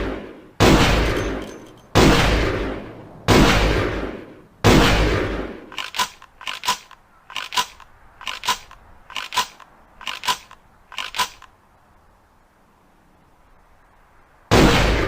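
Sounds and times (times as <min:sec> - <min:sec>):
shotgun pump action clicks: 0:05.7 - 0:11.6.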